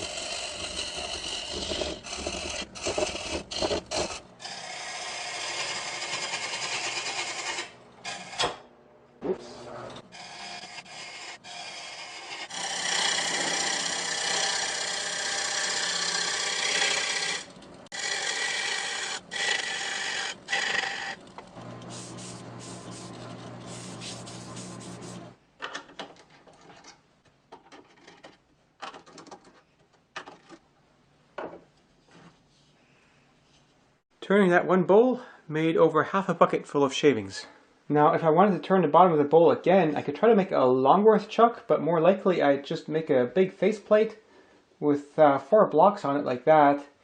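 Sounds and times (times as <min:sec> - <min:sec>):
lathe tool scraping wood: 0:00.0 - 0:08.6, 0:09.7 - 0:25.4
low motor hum: 0:21.2 - 0:25.4.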